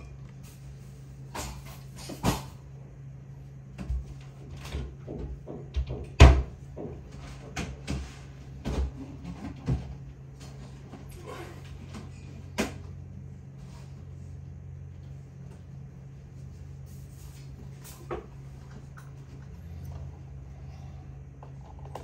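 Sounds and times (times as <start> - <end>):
low steady hum: 0.0 - 22.0
knocks clicks and rattles of objects: 4.6 - 8.0.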